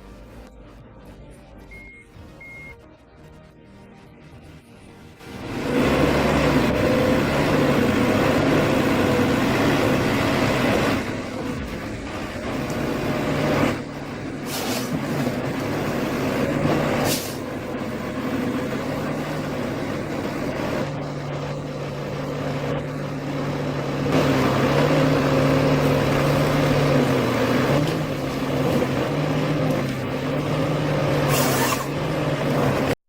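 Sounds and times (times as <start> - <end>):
diesel engine running: 0.0 - 33.0
short hiss: 14.5 - 15.0, 31.3 - 31.9.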